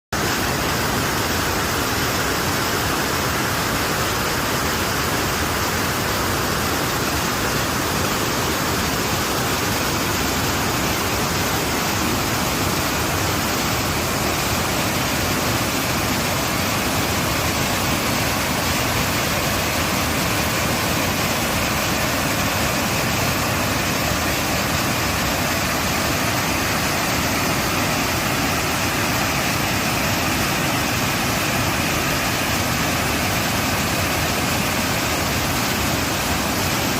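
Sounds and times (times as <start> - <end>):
water pouring over a dam: 0.2 - 36.9.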